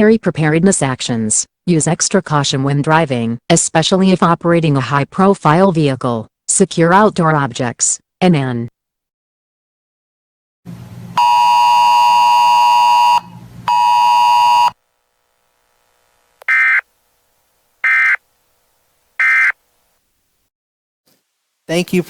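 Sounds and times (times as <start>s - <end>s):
loud electronic buzzer tone: 11.1s - 14.8s, 16.5s - 16.8s, 17.8s - 18.2s, 19.2s - 19.6s.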